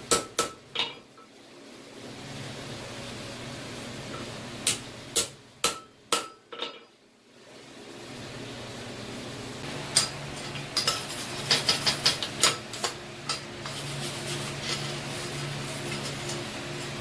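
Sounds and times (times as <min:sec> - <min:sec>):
metal-on-metal hammer strikes: 0:00.1 - 0:01.1, 0:04.6 - 0:06.9, 0:09.9 - 0:10.2.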